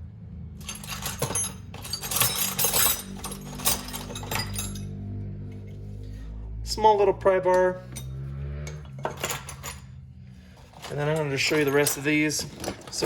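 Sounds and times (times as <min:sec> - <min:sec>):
metal hand tools clinking: 0:00.6 - 0:05.0, 0:07.4 - 0:10.0, 0:10.6 - 0:13.0.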